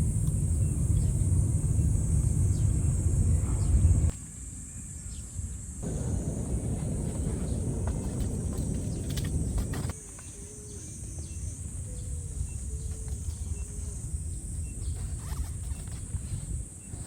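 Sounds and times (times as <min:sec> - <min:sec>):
low rumble: 0:05.8 - 0:10.0.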